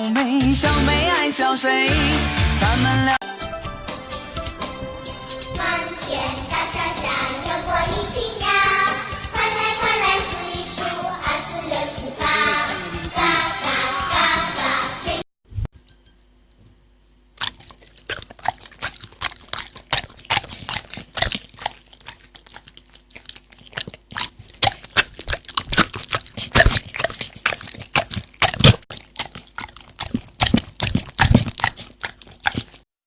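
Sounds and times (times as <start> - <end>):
animal chewing and crunching food: 17.4 - 32.9.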